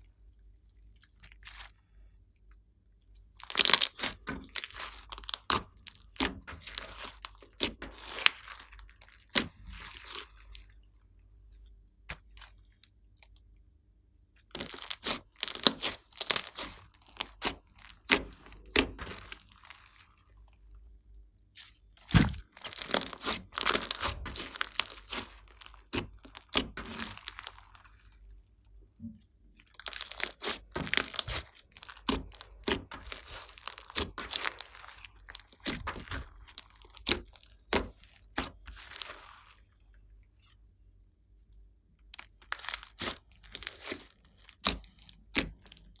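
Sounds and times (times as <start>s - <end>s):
slime squeezed by hand: 14.6s - 20.2s, 21.6s - 27.7s, 29.8s - 39.6s, 42.4s - 45.8s.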